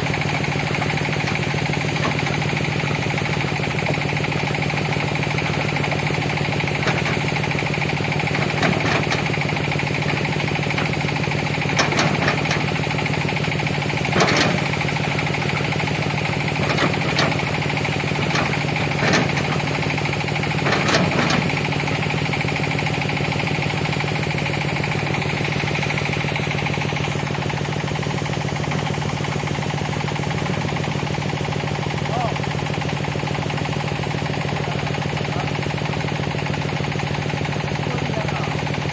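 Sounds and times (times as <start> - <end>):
sharp metal clanks: 0.0 - 22.3
excavator diesel engine running: 0.0 - 38.9.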